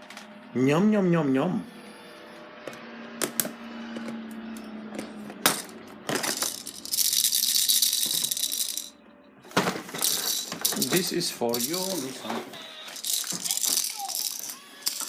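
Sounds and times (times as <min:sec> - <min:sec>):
baby rattle shaken: 0:06.2 - 0:08.9, 0:10.0 - 0:12.2, 0:13.0 - 0:15.0.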